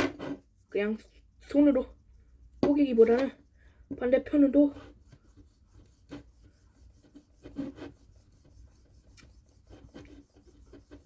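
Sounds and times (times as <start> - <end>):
knife sawing chocolate bar: 4.4 - 11.0.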